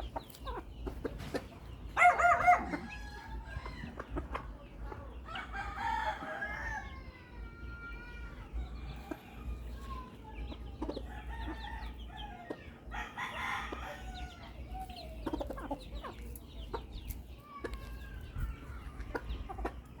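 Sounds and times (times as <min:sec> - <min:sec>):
chickens clucking: 0:00.0 - 0:20.0
rooster crowing: 0:02.0 - 0:03.9, 0:05.3 - 0:07.2, 0:12.9 - 0:14.5.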